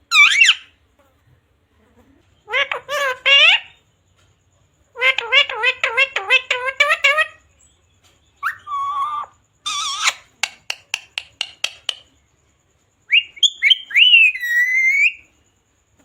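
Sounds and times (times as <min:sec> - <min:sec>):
parrot calling: 0:00.0 - 0:00.8, 0:02.4 - 0:03.8, 0:04.9 - 0:07.4, 0:08.4 - 0:12.1, 0:13.1 - 0:15.3
parrot whistle: 0:00.1 - 0:00.7, 0:08.4 - 0:10.2, 0:13.1 - 0:15.3
parrot clicking chirps: 0:08.4 - 0:12.2.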